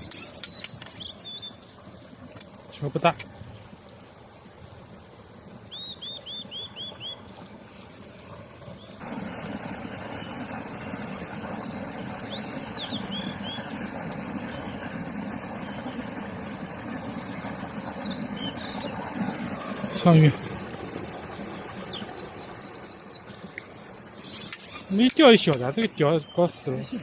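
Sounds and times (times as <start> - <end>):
low rumble and hiss: 1.0 - 24.2
bird calling: 5.7 - 7.4, 11.9 - 20.4, 21.3 - 25.0.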